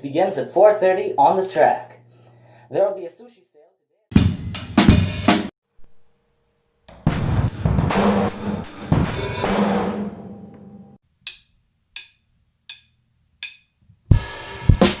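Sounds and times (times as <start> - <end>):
drum and cymbal hits: 4.1 - 5.5, 6.9 - 11.4, 13.4 - 15.0.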